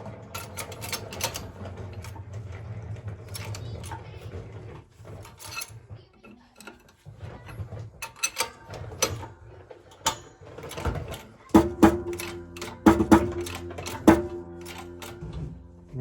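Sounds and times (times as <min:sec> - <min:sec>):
light metal clicks and scrapes: 0:00.3 - 0:15.6
sharp ringing metal strikes: 0:11.6 - 0:16.0.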